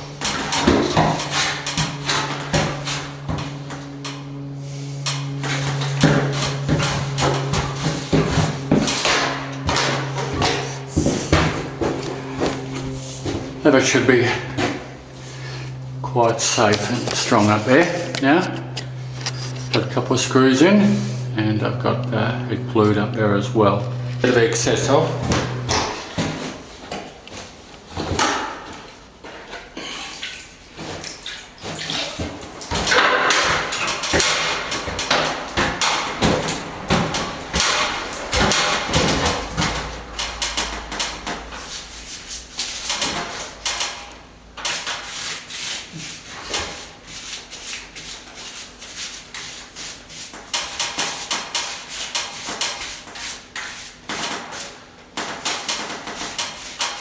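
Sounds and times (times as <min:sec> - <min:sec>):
hand tool scraping plaster: 0:00.0 - 0:03.9, 0:04.6 - 0:15.6, 0:29.7 - 0:57.0.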